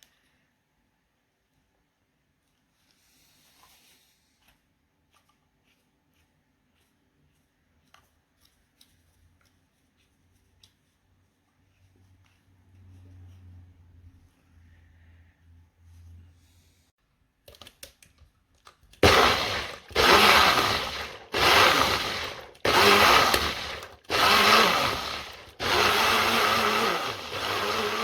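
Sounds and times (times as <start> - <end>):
blender motor and blades pulsing: 19.0 - 28.0.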